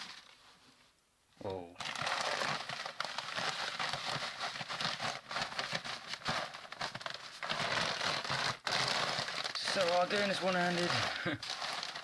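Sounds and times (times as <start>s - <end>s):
dry wood chips pattering: 9.4s - 12.0s.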